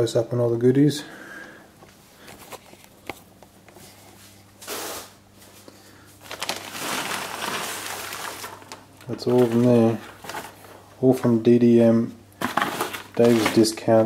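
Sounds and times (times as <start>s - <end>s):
plastic packaging rustling: 2.2s - 3.3s, 6.2s - 11.4s, 12.4s - 14.0s.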